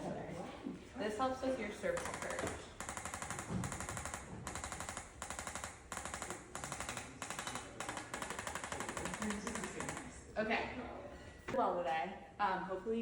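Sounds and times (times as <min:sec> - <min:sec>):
rapid clicking taps: 0:01.9 - 0:10.2.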